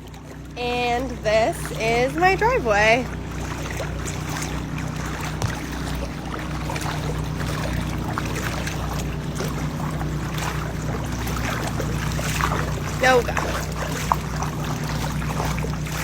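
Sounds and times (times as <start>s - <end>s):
steady low hum: 0.0s - 16.0s
water sloshing around legs: 0.0s - 16.0s.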